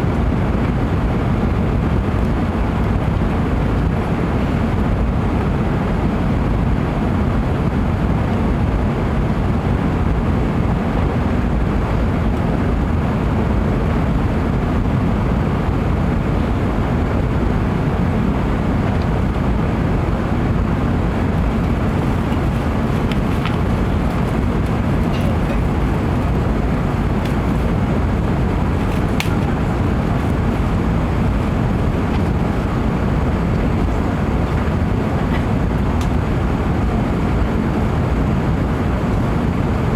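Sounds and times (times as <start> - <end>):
aircraft cabin engine rumble: 0.0 - 39.9.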